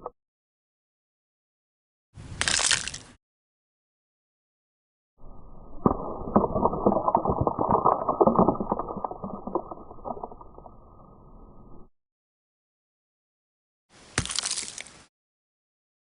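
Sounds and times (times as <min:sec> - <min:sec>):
sharp crackles and pops: 0:05.7 - 0:11.2.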